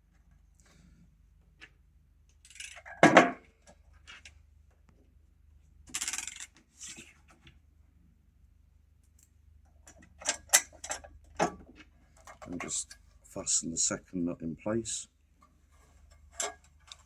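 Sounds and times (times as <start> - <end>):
metal hardware clinking and scraping: 9.9 - 11.5, 16.0 - 17.0.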